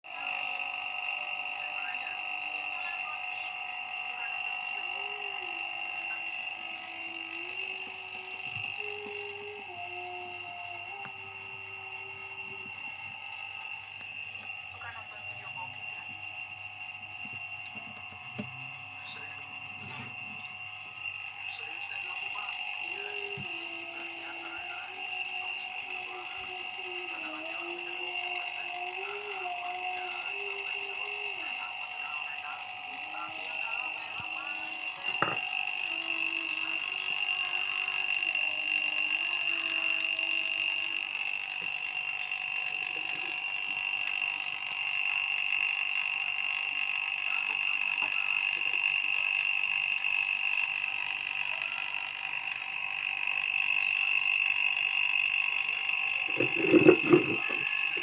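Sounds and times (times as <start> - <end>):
vacuum pump whining: 0.0 - 58.0
lower tone shifting in pitch: 1.8 - 16.2, 17.3 - 41.8.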